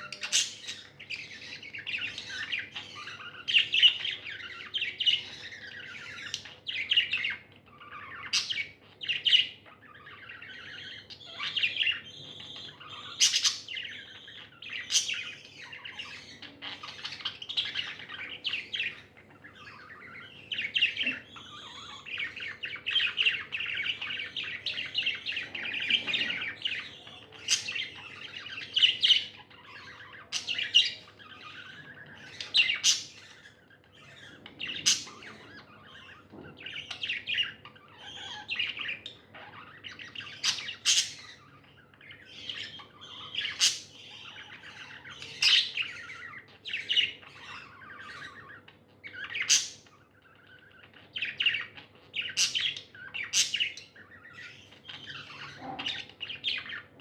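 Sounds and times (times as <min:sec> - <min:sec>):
budgerigars chirping: 0:00.0 - 0:57.0
sharp bird calls: 0:00.0 - 0:57.0.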